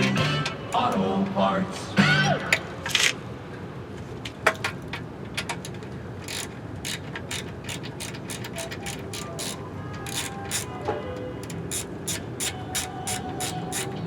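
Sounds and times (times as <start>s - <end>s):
hand ratchet clicking: 5.4s - 10.8s, 11.4s - 14.0s.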